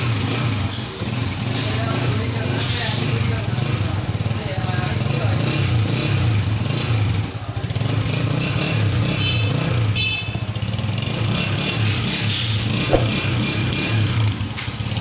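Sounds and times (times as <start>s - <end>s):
motorcycle engine throbbing: 12.5s - 14.1s.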